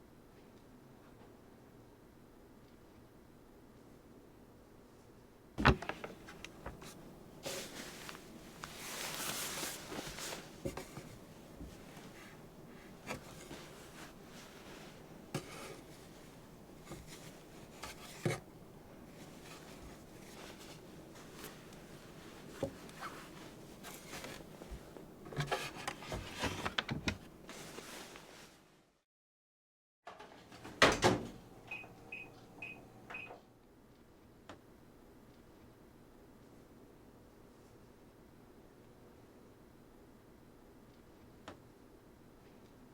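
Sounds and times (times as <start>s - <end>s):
kitchen appliance beeps: 31.7s - 33.4s.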